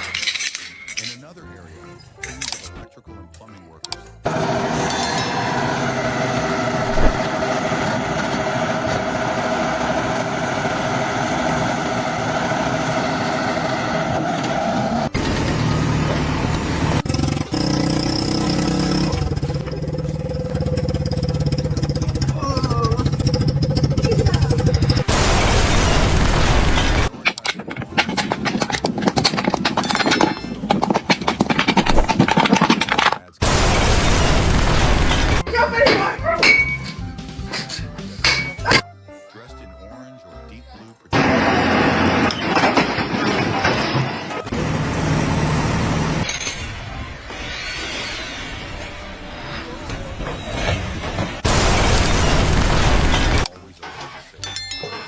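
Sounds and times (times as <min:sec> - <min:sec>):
engine running: 0:04.2 - 0:38.8, 0:41.1 - 0:54.5
dense noisy rush: 0:04.3 - 0:22.4, 0:23.2 - 0:27.1, 0:33.4 - 0:35.4, 0:44.1 - 0:53.5
sharp bangs and knocks: 0:41.2 - 0:46.7.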